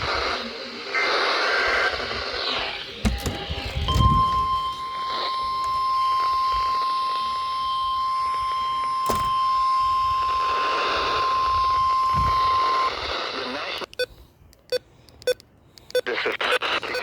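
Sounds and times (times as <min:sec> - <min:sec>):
steady alarm tone: 0:03.0 - 0:13.0.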